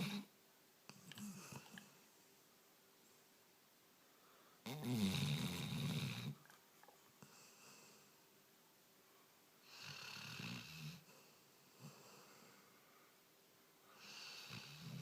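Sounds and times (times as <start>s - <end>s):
dog snoring: 0.0s - 0.3s, 4.6s - 6.4s, 9.6s - 12.5s, 13.9s - 15.0s.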